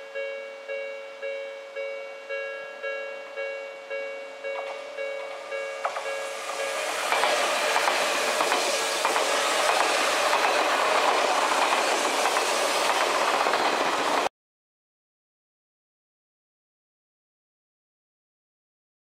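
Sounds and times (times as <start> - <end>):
train running noise: 1.8 - 14.3
wheels clacking over rail joints: 4.6 - 14.3.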